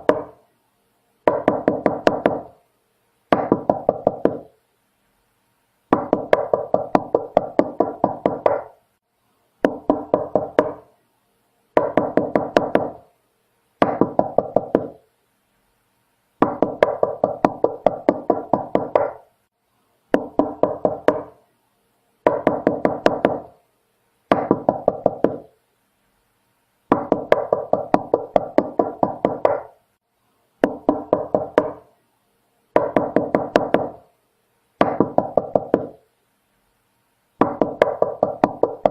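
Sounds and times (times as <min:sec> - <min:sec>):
knocking on a door: 0:00.0 - 0:00.3, 0:01.3 - 0:02.5, 0:03.3 - 0:04.5, 0:05.9 - 0:08.7, 0:09.6 - 0:10.8, 0:11.8 - 0:13.0, 0:13.8 - 0:15.0, 0:16.4 - 0:19.2, 0:20.1 - 0:21.3, 0:22.3 - 0:23.5, 0:24.3 - 0:25.5, 0:26.9 - 0:29.7, 0:30.6 - 0:31.8, 0:32.8 - 0:34.0, 0:34.8 - 0:36.0, 0:37.4 - 0:38.9.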